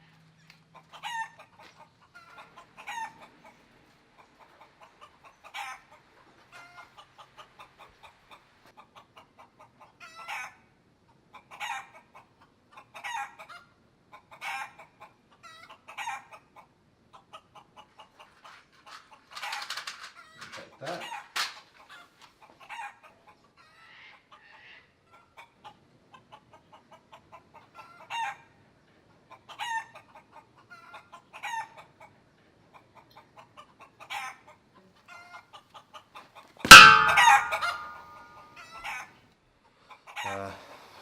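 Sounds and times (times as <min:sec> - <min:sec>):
chickens clucking: 0:00.1 - 0:28.4, 0:29.1 - 0:38.4, 0:39.8 - 0:41.0.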